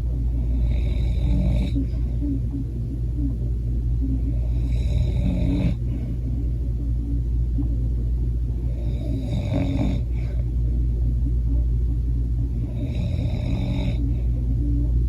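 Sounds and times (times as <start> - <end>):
steady low hum: 0.0 - 15.0
man snoring: 0.3 - 1.9, 4.3 - 6.1, 8.6 - 10.4, 12.6 - 14.1.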